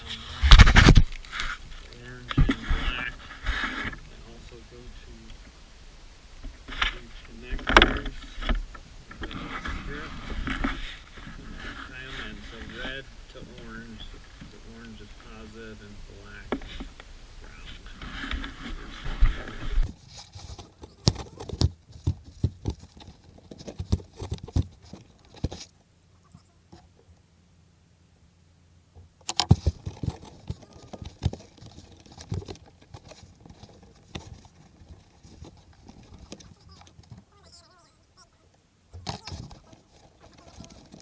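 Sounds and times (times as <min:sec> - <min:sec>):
hand tools clicking and tapping: 0:29.2 - 0:37.3.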